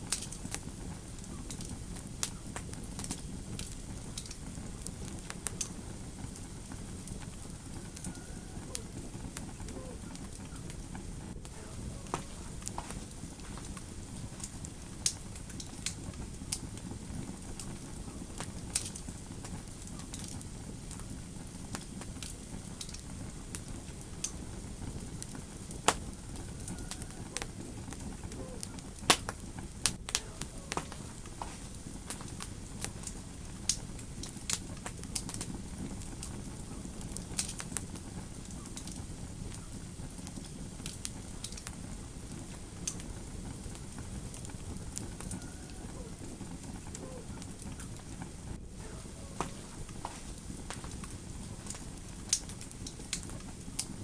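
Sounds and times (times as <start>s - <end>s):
fireplace wood crackling: 0.0s - 54.0s
low rumble of flame: 0.0s - 54.0s.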